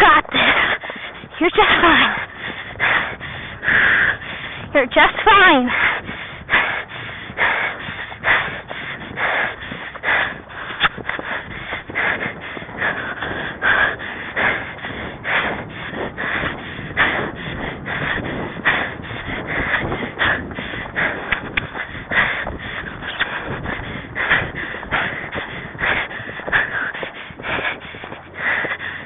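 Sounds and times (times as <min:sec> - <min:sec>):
person breathing heavily: 0:00.0 - 0:29.0.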